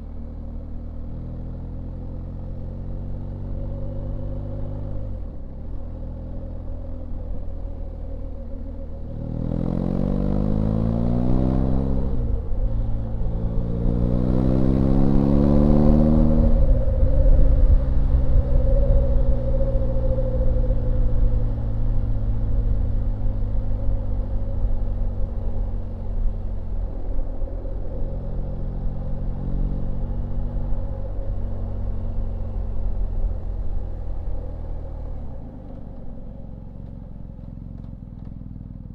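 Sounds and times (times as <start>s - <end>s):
motorcycle engine revving: 9.3s - 18.5s.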